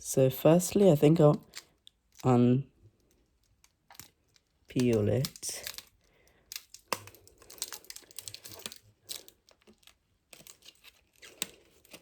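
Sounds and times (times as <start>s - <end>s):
plastic film peeling and crinkling: 0.7s - 12.0s.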